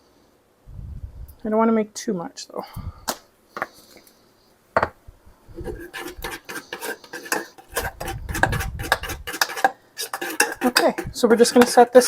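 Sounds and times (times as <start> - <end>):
utensil clinking and scraping in pot: 5.6 - 12.0.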